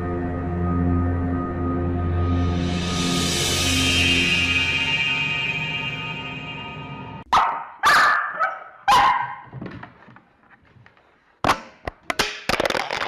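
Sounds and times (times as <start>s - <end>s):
dog barking: 7.3s - 9.5s.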